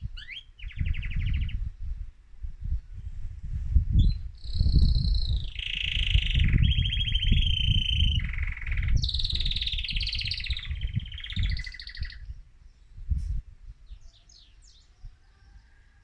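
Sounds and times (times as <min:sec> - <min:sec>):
canary singing rapid trills: 0:00.0 - 0:01.6, 0:04.0 - 0:12.3.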